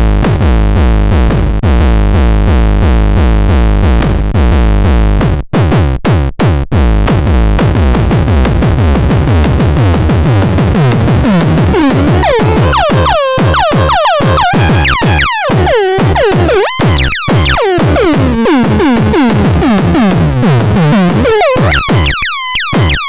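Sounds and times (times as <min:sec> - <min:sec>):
synth blips dropping in pitch: 0:09.0 - 0:23.0
swooping electronic chirps: 0:09.8 - 0:23.0.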